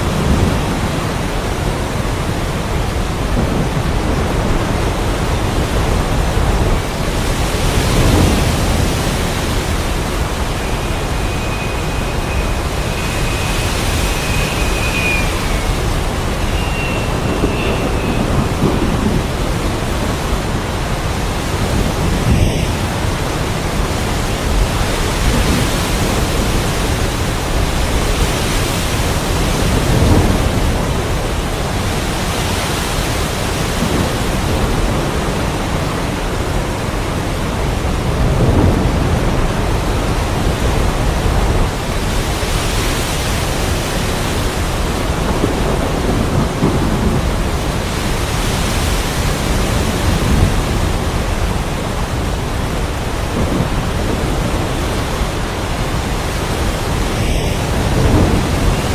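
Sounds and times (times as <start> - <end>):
heavy rain: 0.0 - 58.9
thunder rumbling: 0.0 - 58.9.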